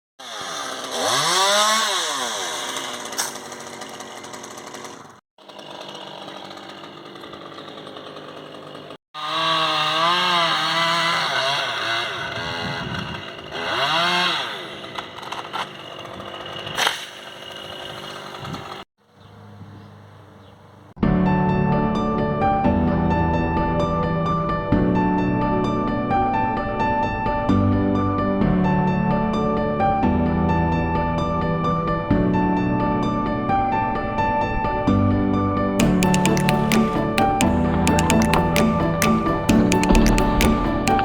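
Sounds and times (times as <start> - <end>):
chainsaw revving: 0.2 - 18.8.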